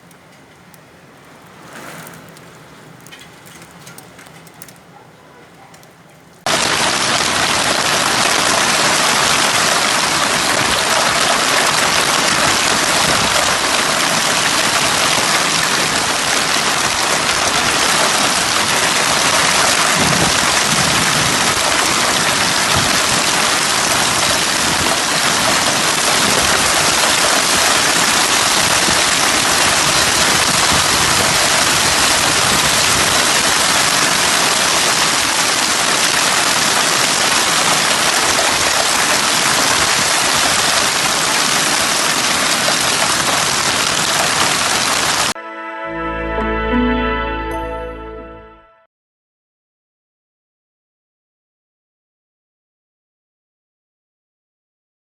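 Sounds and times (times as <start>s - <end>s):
heavy rain: 0.0s - 4.9s, 5.8s - 45.4s.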